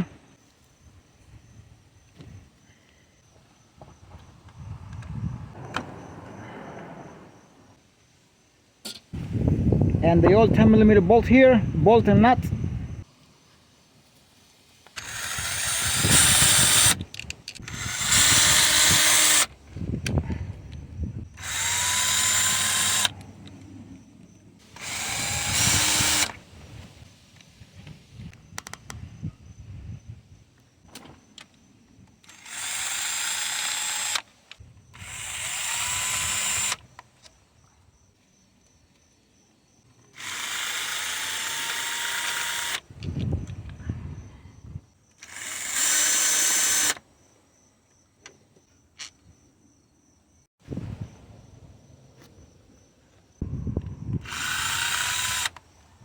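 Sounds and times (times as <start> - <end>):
cordless power tool running: 15.0 - 17.0, 17.6 - 19.5, 21.4 - 23.2, 24.7 - 26.5, 32.3 - 34.3, 35.0 - 36.8, 40.1 - 42.8, 45.2 - 47.0, 54.2 - 55.6.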